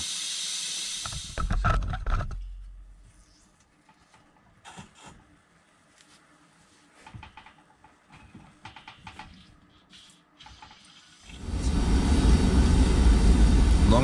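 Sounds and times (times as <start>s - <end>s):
water and air hissing from drain: 0.0s - 1.6s, 9.7s - 14.0s.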